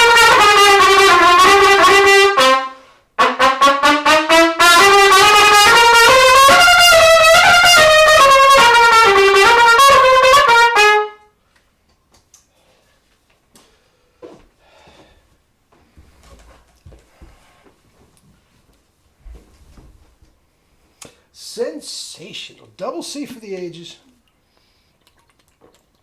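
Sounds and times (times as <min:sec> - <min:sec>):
trumpet playing slurred notes: 0:00.0 - 0:11.4.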